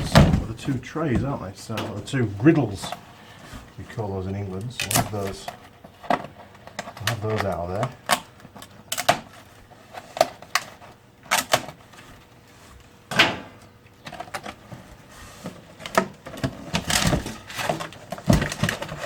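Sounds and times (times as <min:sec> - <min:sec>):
cardboard scraping and rustling: 0:00.0 - 0:13.0, 0:14.0 - 0:19.0
metal plate clunk: 0:13.1 - 0:13.6.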